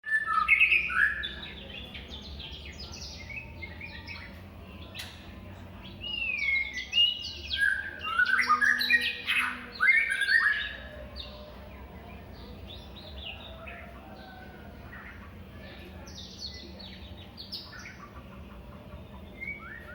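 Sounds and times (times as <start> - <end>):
bird singing whistles and chirps: 0.0 - 5.1, 5.9 - 11.4, 19.3 - 19.9.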